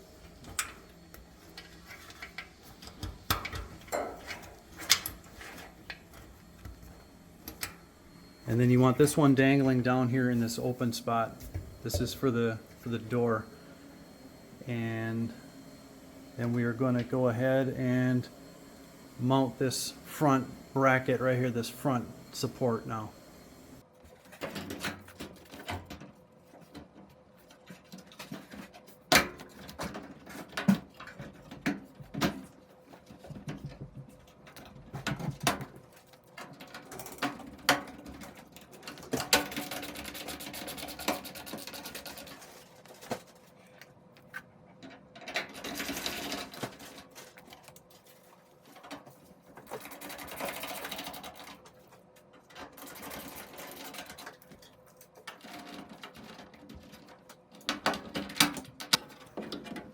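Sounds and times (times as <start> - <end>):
cordless drill driving screws: 6.4 - 23.8.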